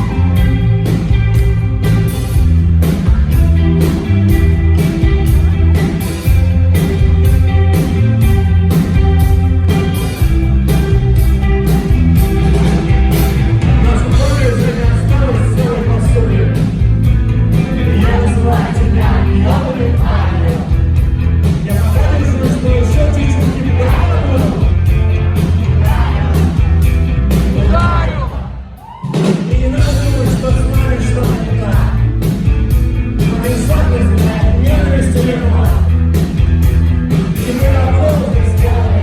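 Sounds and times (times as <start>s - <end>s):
loud rock band playing: 0.0s - 39.0s
person singing: 17.8s - 20.7s, 21.7s - 24.7s.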